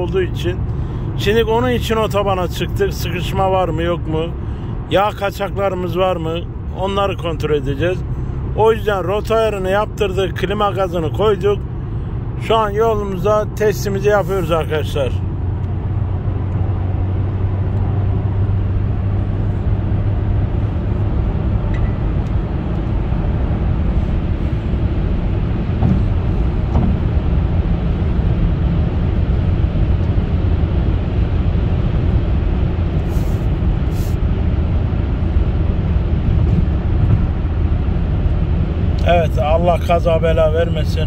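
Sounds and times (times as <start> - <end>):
car engine drone: 0.0 - 41.0
road and tyre noise: 0.0 - 41.0.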